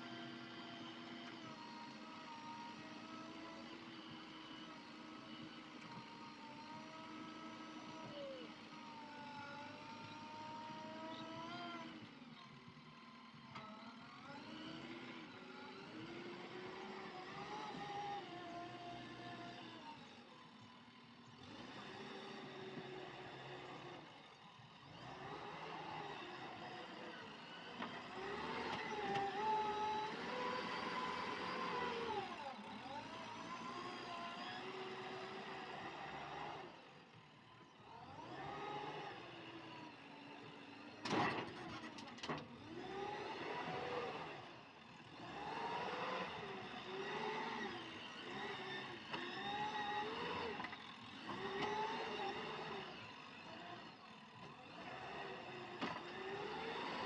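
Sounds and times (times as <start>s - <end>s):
heavy machinery diesel engine: 37.8s - 57.0s.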